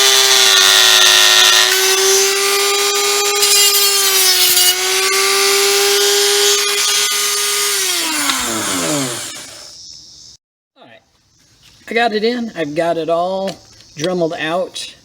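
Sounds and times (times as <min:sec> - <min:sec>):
rotary tool grinding plastic: 0:00.0 - 0:09.8.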